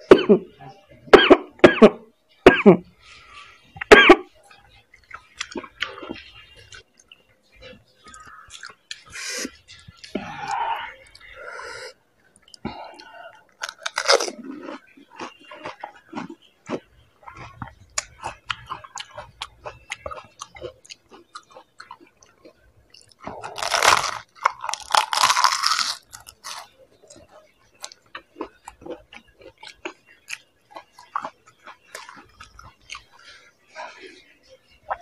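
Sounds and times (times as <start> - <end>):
wet chewing: 12.4 - 33.4
crisp shells crunching: 13.6 - 14.4, 23.6 - 26.7.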